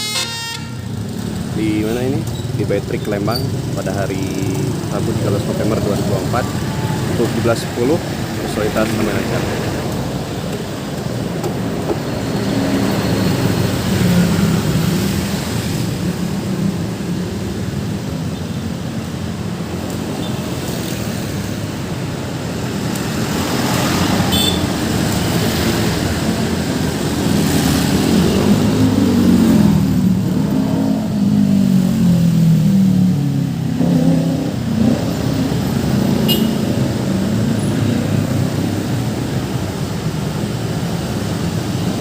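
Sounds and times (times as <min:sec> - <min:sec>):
road traffic passing: 0:00.0 - 0:42.0.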